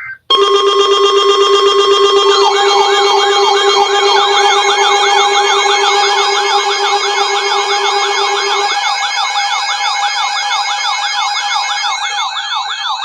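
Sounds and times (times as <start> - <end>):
low buzz: 0.3 - 9.6
sirens wailing: 0.3 - 13.0
steady alert tones: 0.3 - 13.0.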